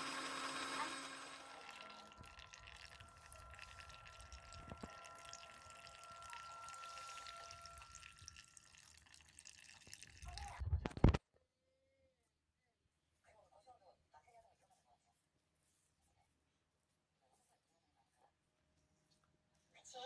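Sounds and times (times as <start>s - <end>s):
faint high hum: 0.8s - 9.0s
water sloshing and dripping: 2.1s - 10.6s.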